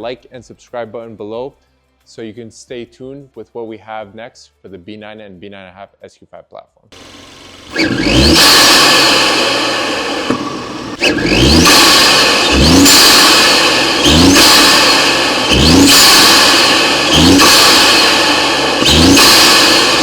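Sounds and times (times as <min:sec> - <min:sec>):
car engine revving: 0:07.0 - 0:20.0
turbo spool whistle: 0:07.7 - 0:20.0.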